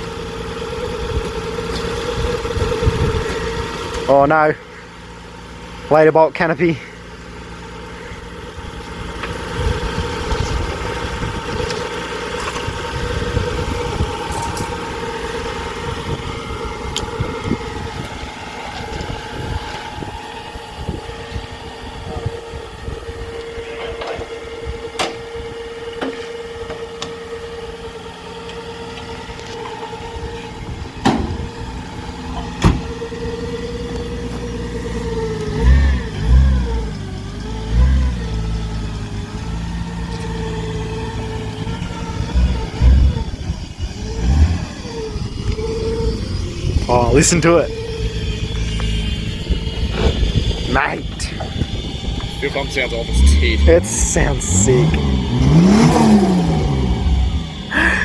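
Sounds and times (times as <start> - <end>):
car engine idling unevenly: 0.0 - 58.0
fuel pump whine: 0.0 - 58.0
engine revving: 27.2 - 58.0.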